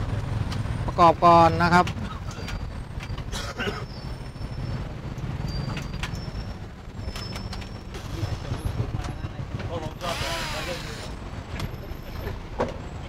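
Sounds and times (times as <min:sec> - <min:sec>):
steady low rumble: 0:06.3 - 0:12.5.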